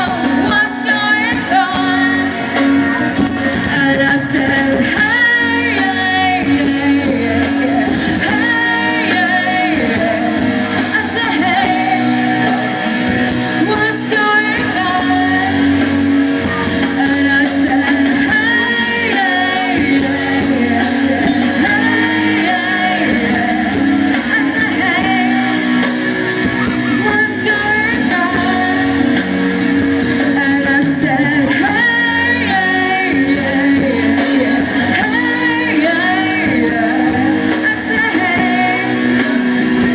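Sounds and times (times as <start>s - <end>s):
amplified guitar: 0.0s - 39.9s
person singing: 0.0s - 39.9s.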